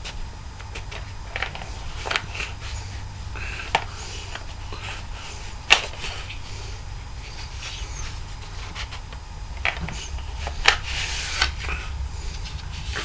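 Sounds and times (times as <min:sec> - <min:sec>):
plastic case rustling: 0:00.0 - 0:04.7, 0:07.7 - 0:13.0
low steady hum: 0:00.0 - 0:13.0.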